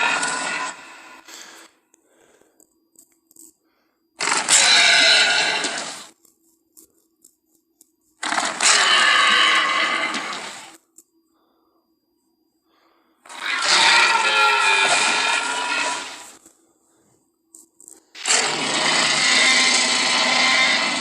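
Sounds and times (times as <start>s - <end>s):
dinosaur roar: 0.0s - 1.2s, 4.2s - 6.1s, 8.2s - 10.7s, 13.3s - 16.3s, 18.2s - 21.0s.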